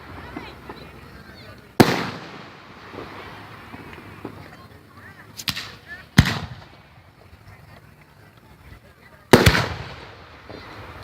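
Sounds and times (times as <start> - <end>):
firework shells booming: 1.8 - 4.6, 5.4 - 7.1, 9.3 - 11.0
sharp firework crack: 1.8 - 7.2, 9.3 - 11.0.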